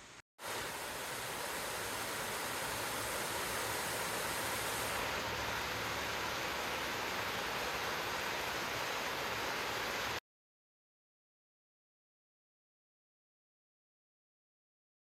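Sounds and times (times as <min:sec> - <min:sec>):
waterfall rushing: 0:00.0 - 0:10.2.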